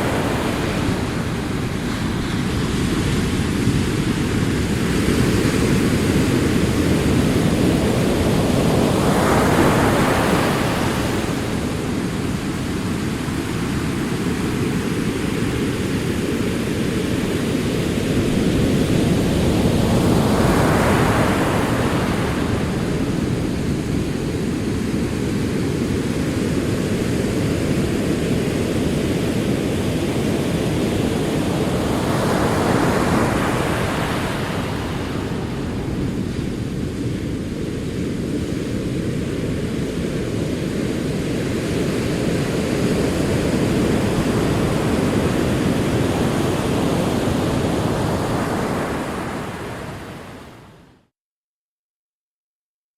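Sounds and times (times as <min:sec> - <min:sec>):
low rumble of surf: 0:00.0 - 0:50.9
ocean waves washing in: 0:00.0 - 0:50.9.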